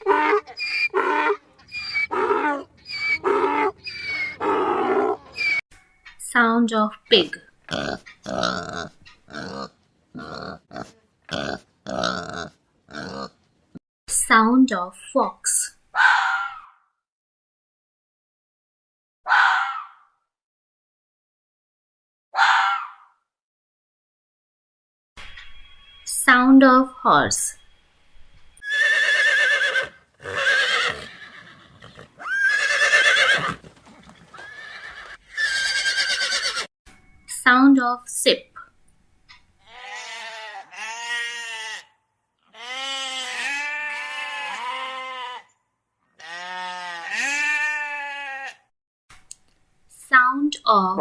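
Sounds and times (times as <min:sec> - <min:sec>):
horse neighing: 0:00.0 - 0:05.6, 0:28.6 - 0:33.6, 0:34.3 - 0:36.7
pig grunting: 0:00.0 - 0:05.6, 0:07.7 - 0:13.4.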